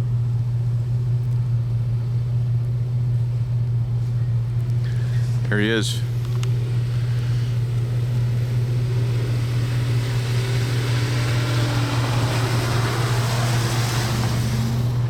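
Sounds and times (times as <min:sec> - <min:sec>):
vehicle engine idling: 0:00.0 - 0:15.0
hiss: 0:06.5 - 0:15.0.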